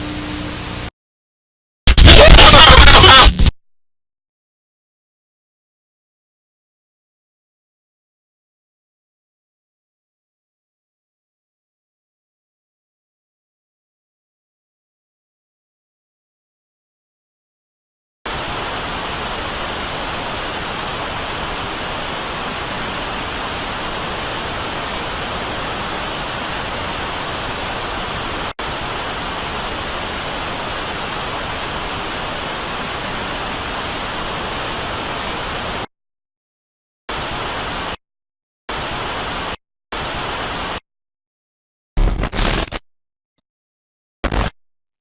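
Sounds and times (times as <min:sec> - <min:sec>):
broadcast static hiss: 0:00.0 - 0:00.9, 0:01.9 - 0:03.5, 0:18.3 - 0:35.9, 0:38.7 - 0:40.8.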